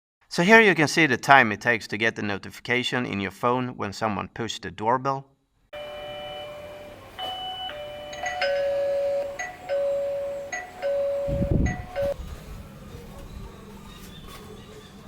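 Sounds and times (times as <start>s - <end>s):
doorbell chime melody: 5.8s - 12.2s.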